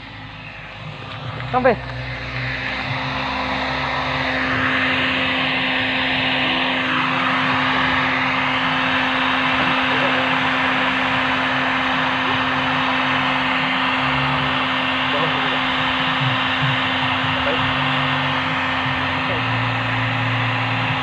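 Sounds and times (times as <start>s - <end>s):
mechanical running hum: 0.0s - 21.0s.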